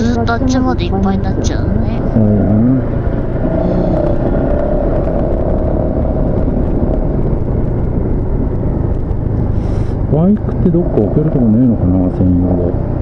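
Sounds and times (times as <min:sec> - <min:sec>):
wind noise on microphone: 0:02.0 - 0:10.4.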